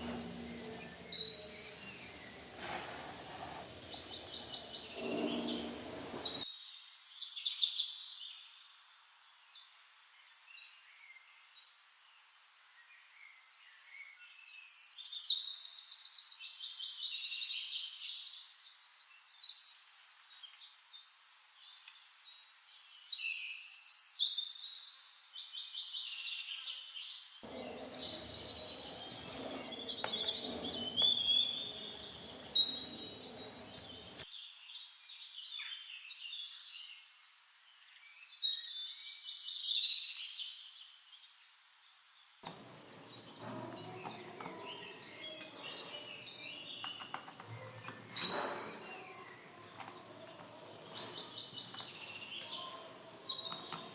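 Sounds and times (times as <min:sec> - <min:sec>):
birds trilling and chirping: 0:00.0 - 0:06.4, 0:27.4 - 0:34.2, 0:42.4 - 0:53.9.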